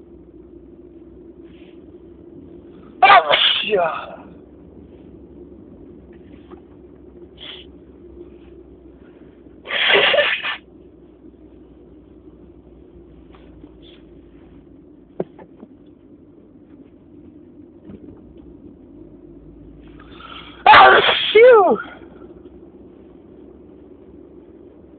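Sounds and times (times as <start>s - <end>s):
low background hum: 0.0s - 24.9s
person sneezing: 3.0s - 4.2s, 9.7s - 10.6s, 20.3s - 22.0s.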